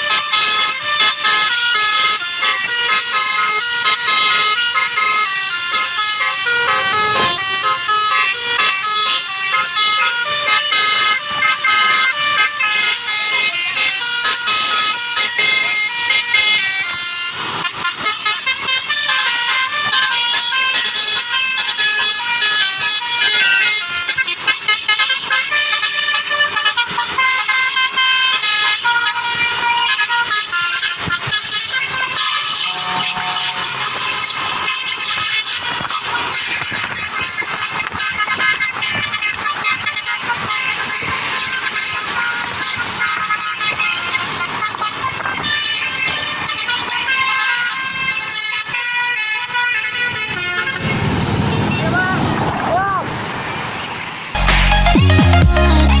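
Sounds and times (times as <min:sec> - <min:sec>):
multi-tone air horn melody: 0:00.0 - 0:52.2, 0:54.4 - 0:56.0.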